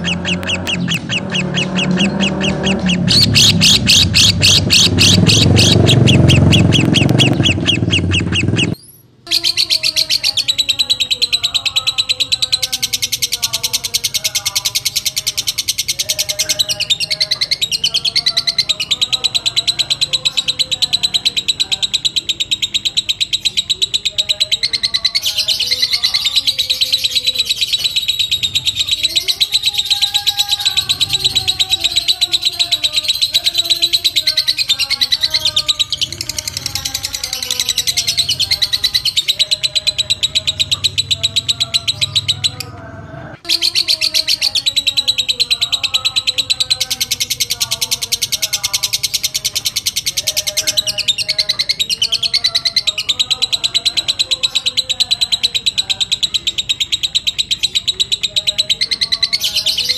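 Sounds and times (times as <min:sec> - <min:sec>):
bird shrill chattering trill: 0:00.0 - 0:42.6.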